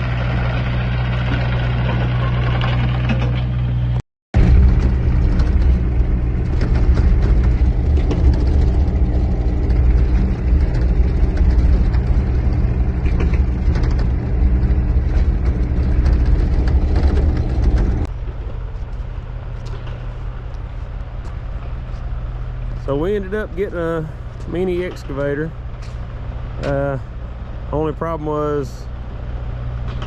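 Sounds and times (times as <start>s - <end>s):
vehicle engine droning: 0.0s - 30.0s.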